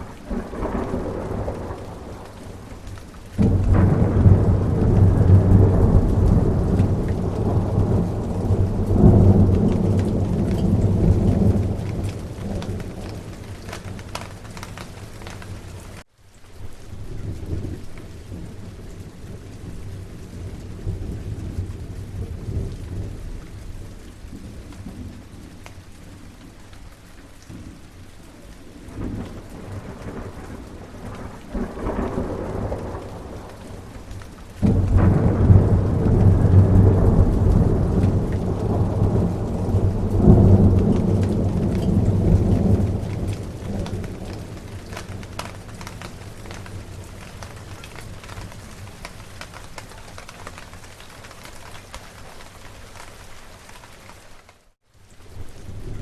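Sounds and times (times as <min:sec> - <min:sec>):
loud thunderclap: 0:00.0 - 0:15.6, 0:28.9 - 0:49.6
distant thunder rumbles: 0:00.0 - 0:16.0, 0:27.5 - 0:51.9
steady rain: 0:00.0 - 0:56.0.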